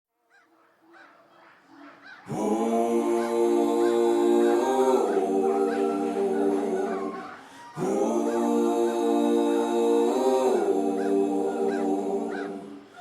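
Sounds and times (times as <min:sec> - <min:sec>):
voices singing sustained chord: 0:02.3 - 0:13.0.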